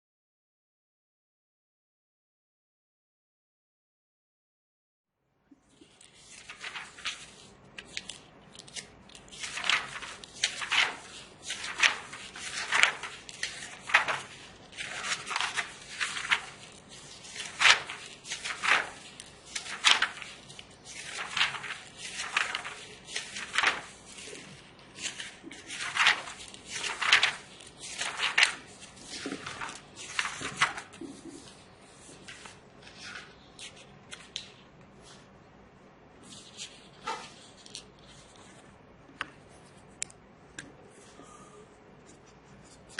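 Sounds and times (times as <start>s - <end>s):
pages rustling: 5.6s - 35.3s, 36.2s - 40.2s.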